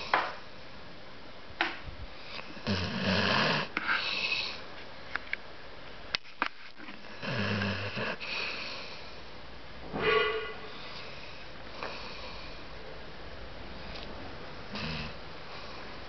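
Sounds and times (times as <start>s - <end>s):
pet snoring: 2.2s - 4.6s, 7.0s - 9.0s, 14.7s - 15.8s.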